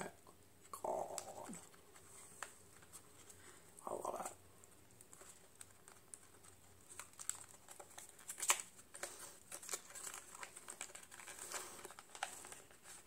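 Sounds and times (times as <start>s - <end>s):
packaging crinkling: 4.6s - 13.0s.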